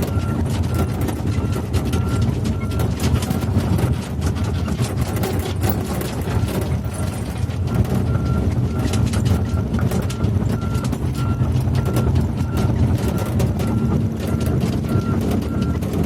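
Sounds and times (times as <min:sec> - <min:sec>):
diesel engine running: 0:00.0 - 0:16.0
sharp clicks and clanks: 0:00.0 - 0:16.0
warning alarm beeping: 0:05.6 - 0:15.9.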